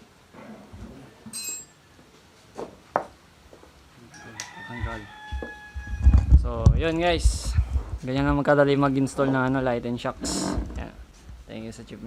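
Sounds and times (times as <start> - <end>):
rooster crowing: 4.1 - 6.4.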